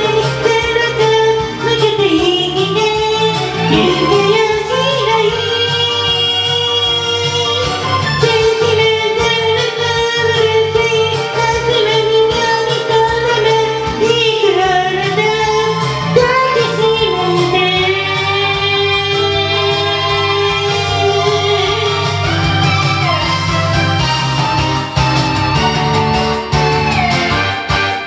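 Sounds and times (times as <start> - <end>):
backing track with bass line: 3.5 - 5.2
person singing pop song: 3.6 - 5.1.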